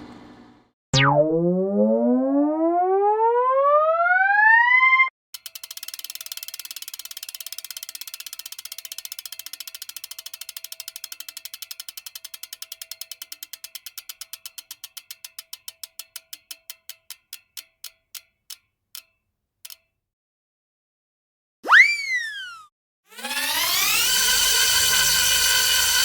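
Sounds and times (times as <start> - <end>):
spinning wheel ticking: 5.4 - 19.9, 23.2 - 26.0.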